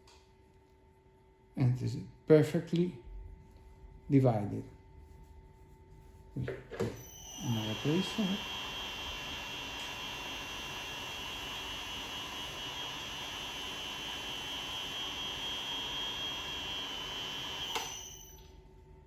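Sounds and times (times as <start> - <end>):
fabric splitting machine whine: 6.8 - 18.5.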